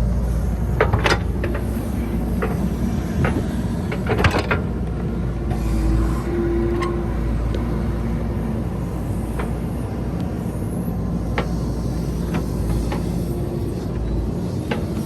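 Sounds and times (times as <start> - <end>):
diesel engine rumbling: 0.0 - 15.0.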